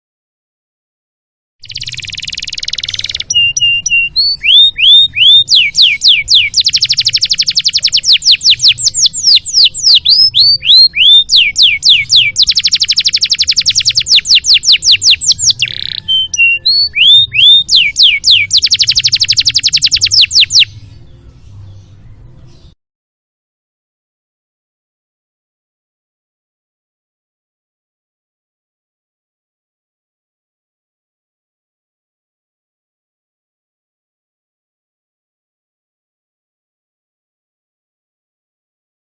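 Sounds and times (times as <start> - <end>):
canary singing trills: 1.6 - 22.8.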